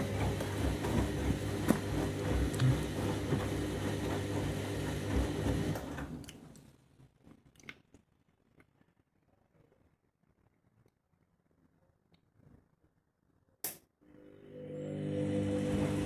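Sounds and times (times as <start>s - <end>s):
washing machine motor hum: 0.0s - 6.2s, 14.0s - 16.0s.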